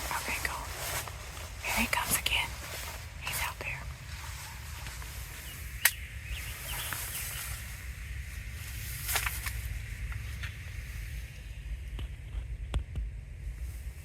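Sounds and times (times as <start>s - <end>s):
low rumble: 0.0s - 14.0s
faint bird chirps: 5.1s - 7.8s
sharp clicks: 5.8s - 6.1s.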